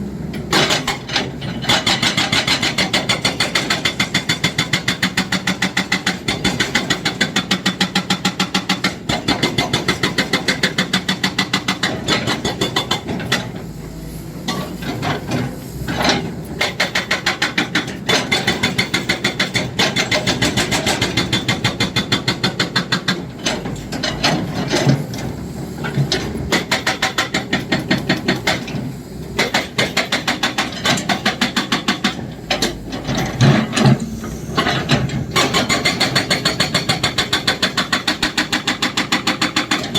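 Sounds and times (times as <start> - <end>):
hydraulic breaker hammering: 16.0 - 25.3, 25.9 - 39.9.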